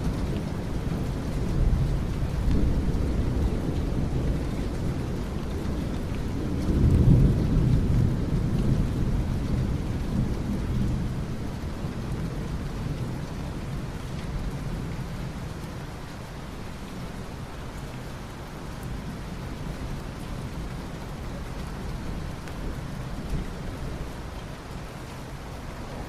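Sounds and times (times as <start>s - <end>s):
rolling thunder rumble: 0.0s - 15.6s
rainfall: 0.0s - 26.0s.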